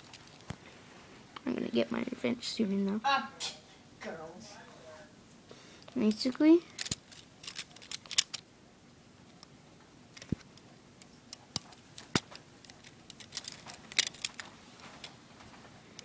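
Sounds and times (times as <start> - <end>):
plastic pieces clicking: 6.7 - 8.4, 11.3 - 15.1.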